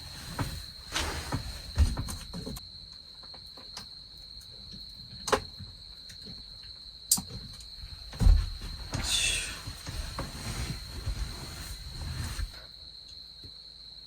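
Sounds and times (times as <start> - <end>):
crickets trilling: 0.0 - 14.0
low thump: 8.2 - 9.1.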